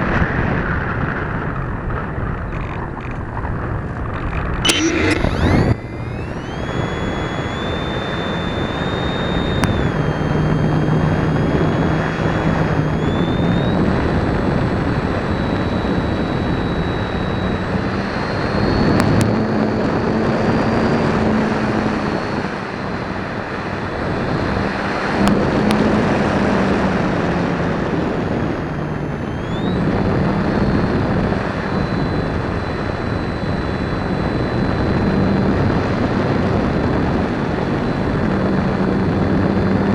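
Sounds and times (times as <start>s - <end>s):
electric motor and propeller whine: 0.0s - 39.9s
wind rush: 0.0s - 39.9s.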